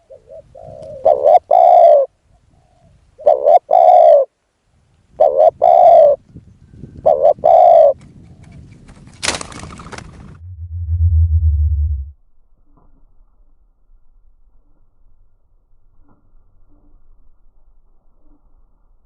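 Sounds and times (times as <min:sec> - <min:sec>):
dove cooing: 0:00.0 - 0:04.3, 0:05.2 - 0:06.2, 0:07.0 - 0:08.0.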